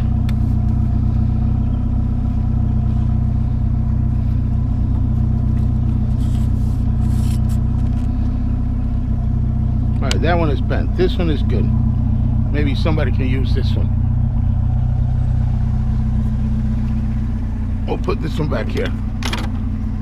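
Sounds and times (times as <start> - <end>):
vehicle engine idling: 0.0 - 20.0.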